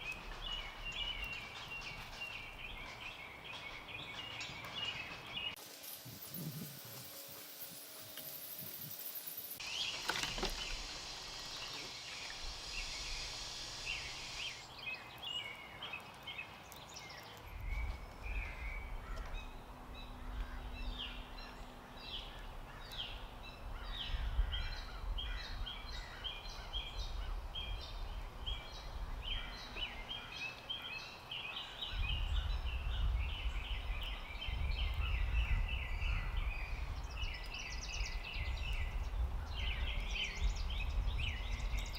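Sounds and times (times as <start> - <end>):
songbirds chirping: 0.0 - 41.9.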